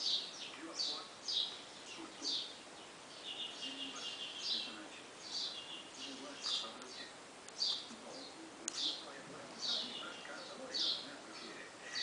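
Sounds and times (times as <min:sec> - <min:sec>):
small birds chirping: 0:00.0 - 0:12.0
fast buzzing bird trill: 0:02.2 - 0:06.2.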